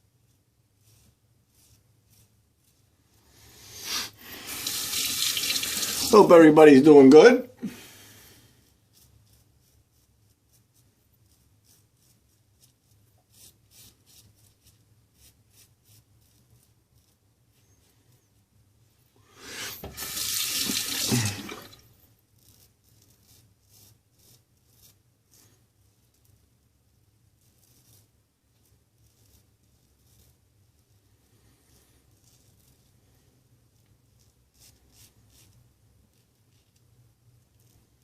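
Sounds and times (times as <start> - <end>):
tap running into sink: 19.7 - 21.8.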